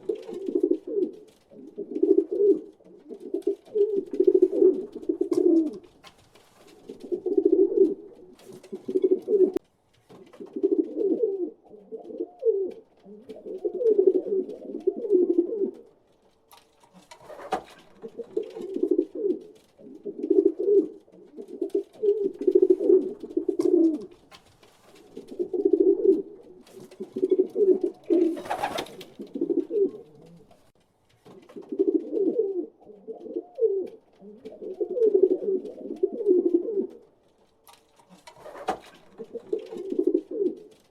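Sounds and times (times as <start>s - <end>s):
pigeons cooing: 0.0s - 5.9s, 6.7s - 9.6s, 10.3s - 15.9s, 17.2s - 24.3s, 25.0s - 30.7s, 31.4s - 37.1s, 38.2s - 40.8s
wing flap or scuffle: 16.8s - 18.0s, 28.1s - 29.2s, 38.0s - 39.2s.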